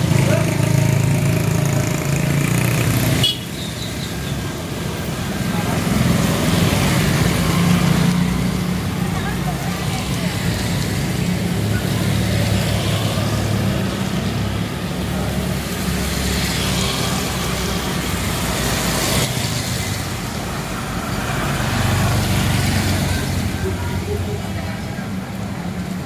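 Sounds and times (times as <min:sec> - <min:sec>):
vehicle engine humming: 0:00.0 - 0:26.0
rain falling: 0:04.1 - 0:26.0.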